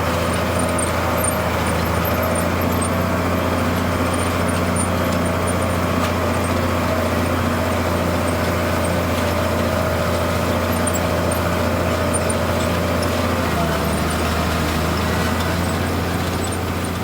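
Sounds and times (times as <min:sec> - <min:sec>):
tractor engine droning: 0:00.0 - 0:17.0.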